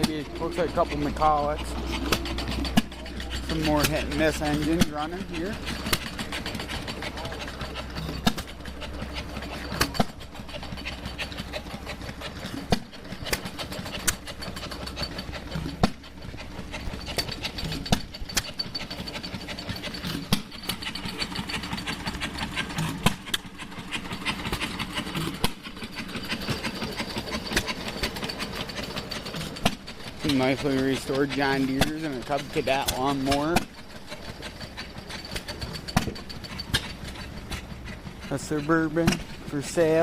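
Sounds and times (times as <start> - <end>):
stationary engines clattering: 0.0 - 40.0
engine firing pops: 15.6 - 16.0, 22.8 - 23.4, 35.4 - 37.7, 39.0 - 39.4.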